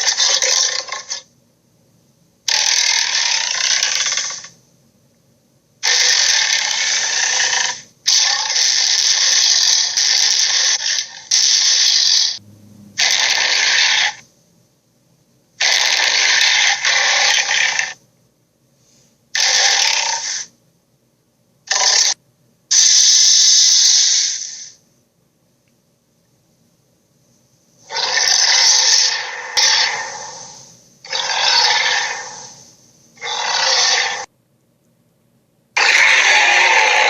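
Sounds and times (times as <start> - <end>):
dragon hissing growls: 27.8 - 34.3, 35.8 - 37.0.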